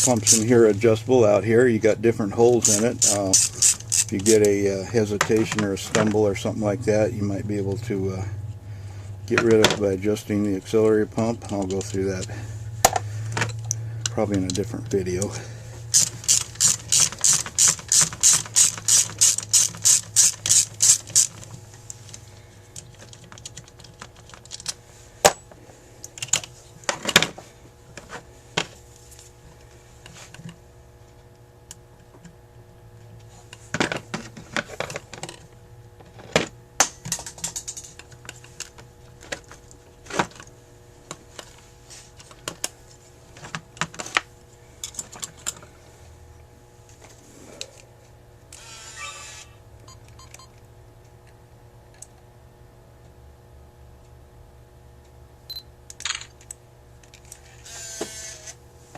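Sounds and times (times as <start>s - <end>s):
hand ratchet clicking: 0.0s - 0.5s, 2.6s - 4.6s, 15.9s - 21.5s
hand tools and metal parts clinking: 0.0s - 0.6s, 2.5s - 6.3s, 11.2s - 22.2s.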